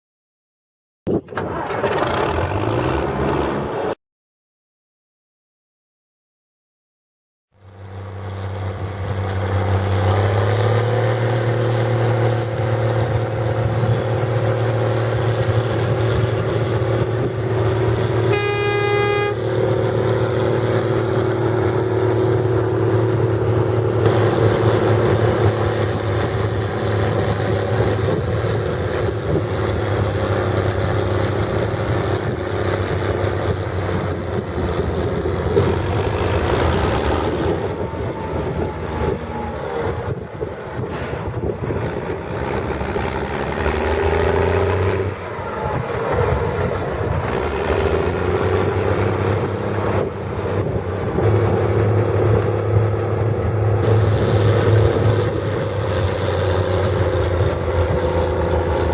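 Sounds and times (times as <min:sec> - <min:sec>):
tractor diesel engine running: 0:07.6 - 0:58.9
horn: 0:18.2 - 0:19.6.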